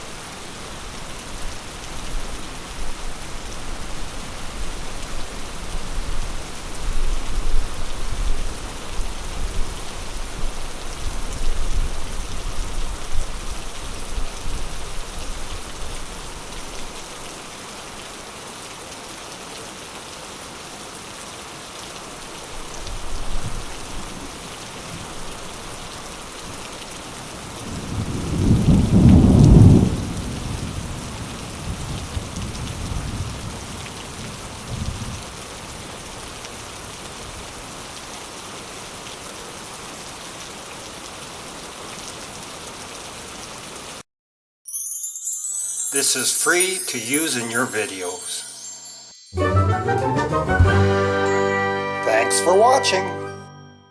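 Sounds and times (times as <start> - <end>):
steady rain falling: 0.0 - 44.0
rolling thunder: 27.7 - 31.2.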